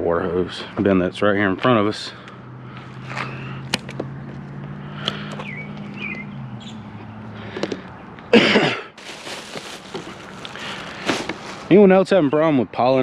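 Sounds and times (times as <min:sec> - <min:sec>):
person coughing: 0:08.3 - 0:09.0
light knocks of scrap: 0:11.0 - 0:11.7.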